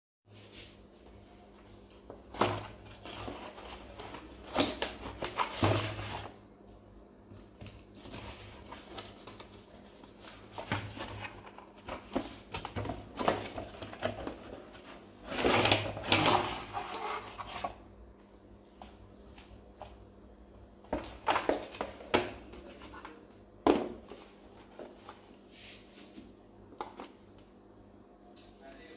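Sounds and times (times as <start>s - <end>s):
packaging rustling and crinkling: 2.2s - 6.4s, 7.8s - 17.8s.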